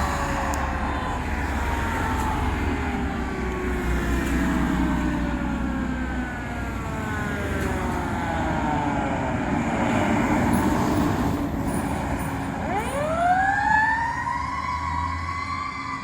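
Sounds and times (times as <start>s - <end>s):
diesel truck engine running: 0.0s - 12.7s.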